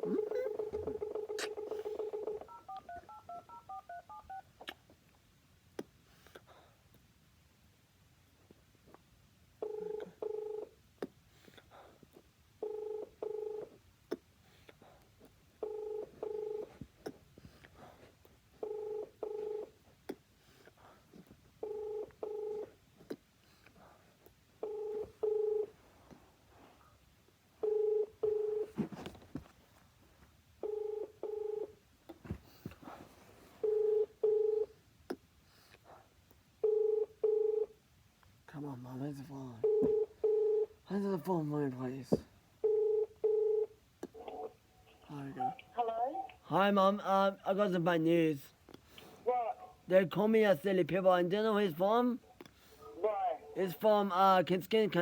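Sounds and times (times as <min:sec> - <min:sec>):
telephone ringback tone: 0:00.0 - 0:04.4, 0:09.6 - 0:10.7, 0:12.6 - 0:13.7, 0:15.6 - 0:16.7, 0:18.6 - 0:19.7, 0:21.6 - 0:22.7, 0:24.6 - 0:25.7, 0:27.6 - 0:28.7, 0:30.6 - 0:31.7, 0:33.6 - 0:34.7, 0:36.6 - 0:37.7, 0:39.6 - 0:40.7, 0:42.6 - 0:43.7.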